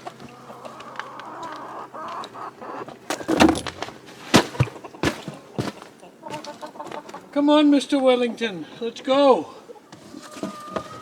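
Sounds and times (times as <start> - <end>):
chickens clucking: 0.0 - 11.0
sharp knocks: 3.1 - 3.9
rustling: 3.1 - 4.5.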